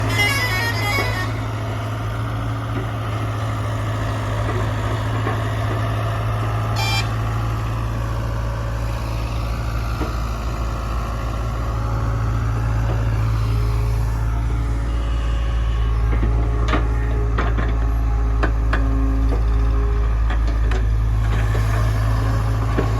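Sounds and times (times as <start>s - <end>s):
diesel engines running: 0.0s - 22.9s
short high beeps: 6.8s - 7.1s.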